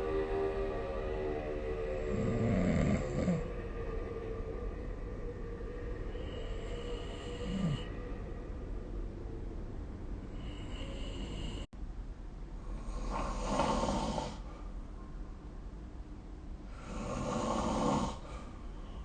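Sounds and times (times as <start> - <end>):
person snoring: 2.0 - 3.6, 6.1 - 8.2, 10.3 - 11.7, 12.7 - 14.5, 16.7 - 18.4.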